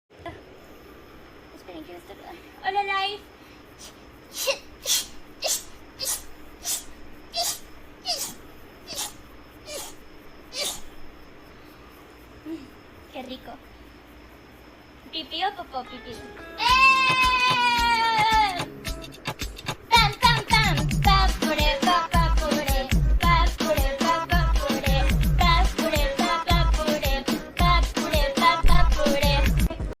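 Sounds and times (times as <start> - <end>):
girl sneezing: 3.8 - 10.9
music: 15.7 - 30.0.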